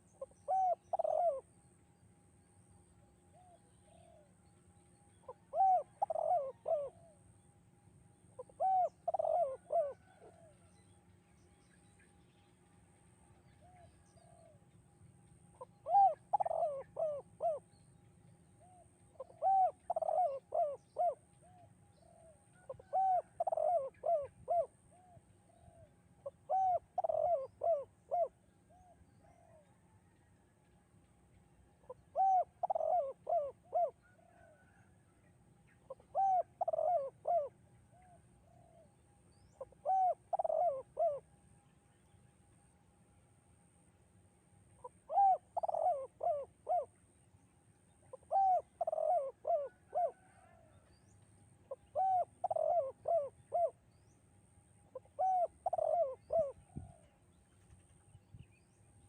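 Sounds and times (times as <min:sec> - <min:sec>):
dove cooing: 0:00.0 - 0:01.5, 0:05.2 - 0:07.2, 0:08.4 - 0:10.7, 0:15.6 - 0:17.6, 0:18.6 - 0:30.1, 0:31.8 - 0:34.9, 0:35.9 - 0:38.9, 0:39.5 - 0:41.2, 0:44.8 - 0:46.9, 0:48.1 - 0:50.8, 0:51.7 - 0:53.8, 0:54.9 - 0:57.2.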